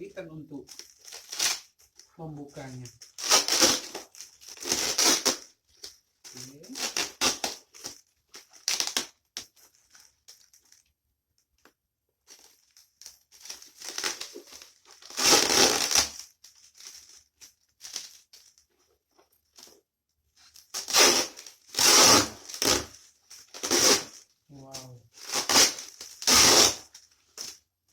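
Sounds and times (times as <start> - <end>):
packaging tearing and crumpling: 3.2 - 5.4, 15.1 - 16.1, 25.2 - 26.9.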